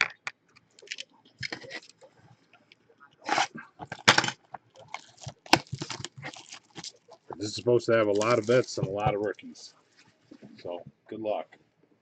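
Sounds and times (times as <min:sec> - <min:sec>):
card pack wrappers crinkling and tearing: 0:00.0 - 0:02.0, 0:03.3 - 0:09.6.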